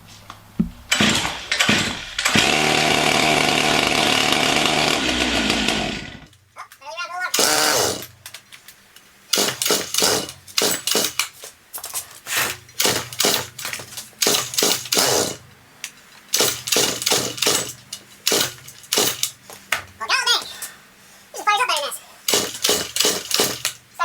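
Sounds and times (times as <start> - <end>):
chainsaw starter cord pulls: 0.9 - 6.4, 7.3 - 8.2, 9.3 - 11.4, 12.8 - 15.4, 16.3 - 19.4, 22.3 - 23.8.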